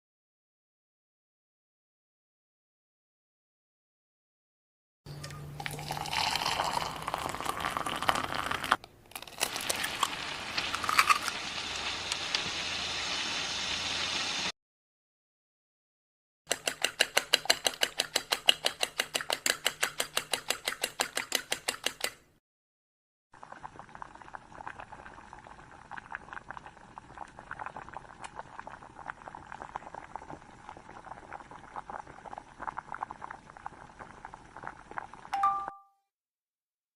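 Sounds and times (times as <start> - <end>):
food bubbling and crackling in pan: 5.6 - 14.5, 23.4 - 35.4.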